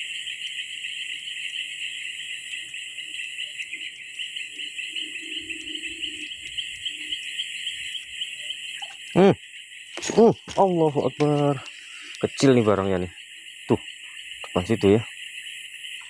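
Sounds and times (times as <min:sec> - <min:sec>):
insects chirring: 0:00.0 - 0:16.0.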